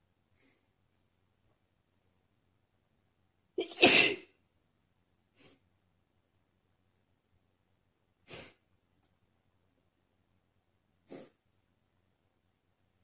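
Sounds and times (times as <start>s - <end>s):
quiet breath sounds: 0.2s - 1.0s, 5.2s - 5.8s, 8.2s - 8.7s, 11.0s - 11.6s
woman sneezing: 3.6s - 4.3s.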